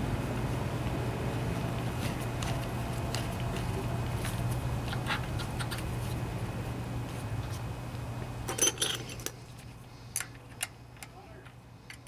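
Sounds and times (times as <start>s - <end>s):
steady low hum: 0.0s - 12.0s
metal parts and tools clinking: 8.5s - 9.4s.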